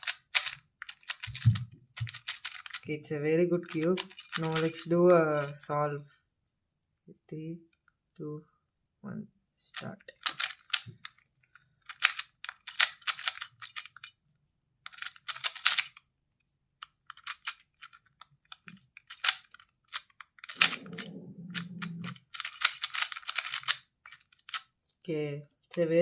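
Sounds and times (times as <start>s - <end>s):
puzzle cube layers clicking: 0.0s - 2.8s, 3.6s - 5.6s, 9.7s - 11.2s, 11.8s - 14.1s, 14.9s - 16.0s, 16.8s - 24.7s
low dull sound: 20.6s - 22.2s.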